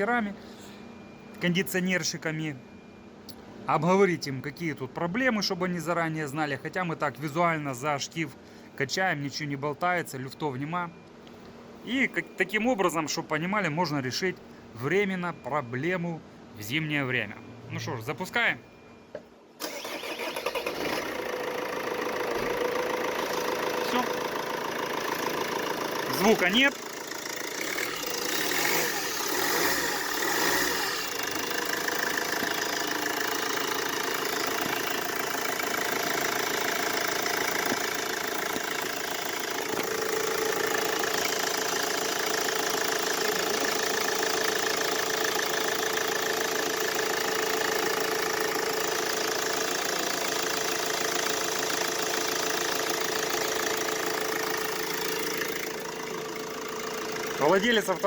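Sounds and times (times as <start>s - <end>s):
diesel engine idling: 19.6s - 58.0s.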